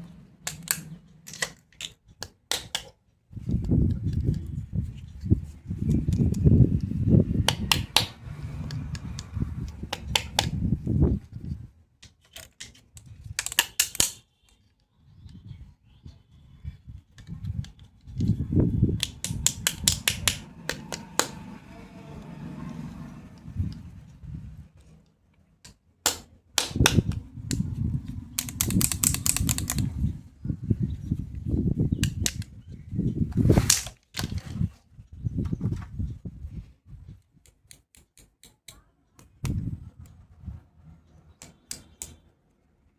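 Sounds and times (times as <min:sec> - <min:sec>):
plastic toy clicks and taps: 0:00.5 - 0:04.4, 0:07.4 - 0:10.6, 0:12.0 - 0:14.2, 0:19.0 - 0:21.4, 0:25.7 - 0:27.6, 0:28.3 - 0:29.9
low handling rumble: 0:18.2 - 0:25.0, 0:26.8 - 0:33.6.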